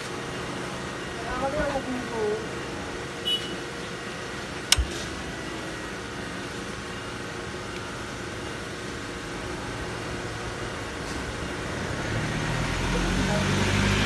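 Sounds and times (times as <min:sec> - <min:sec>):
machine hum: 0:00.0 - 0:14.0
sharp click: 0:04.7 - 0:05.0.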